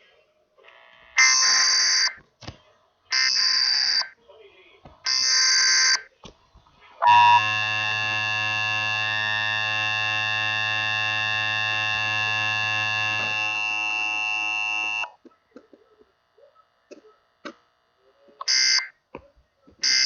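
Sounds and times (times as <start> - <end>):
noisy data burst: 5.1 - 6.1, 7.0 - 15.2
buzzing alert tone: 7.0 - 15.2.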